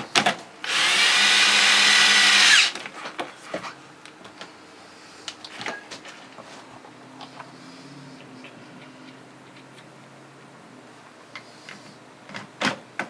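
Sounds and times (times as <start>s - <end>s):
power drill driving a screw: 0.6s - 2.8s.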